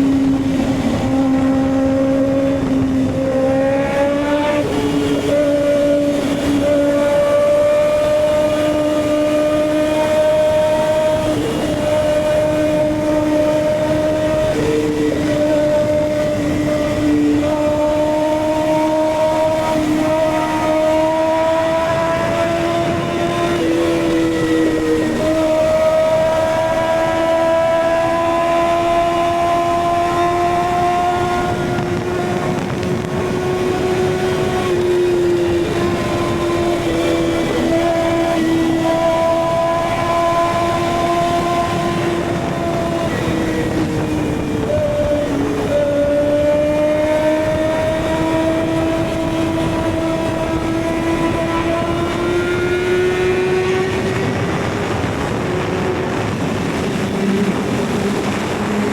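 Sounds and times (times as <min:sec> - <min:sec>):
motorcycle engine at high revs: 0:00.0 - 0:58.9.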